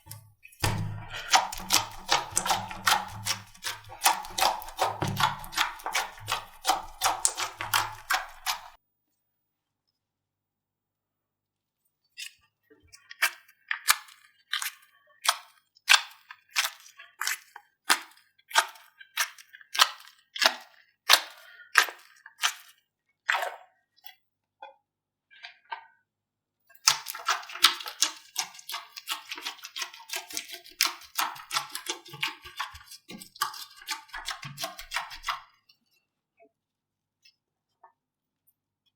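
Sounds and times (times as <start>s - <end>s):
slime popping and crackling: 0.6s - 8.8s.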